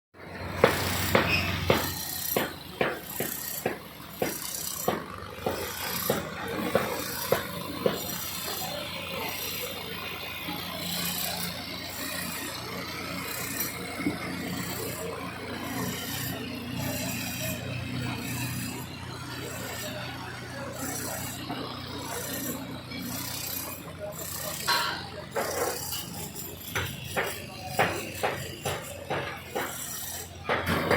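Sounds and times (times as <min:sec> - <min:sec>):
sharp knocks: 0:00.6 - 0:08.1.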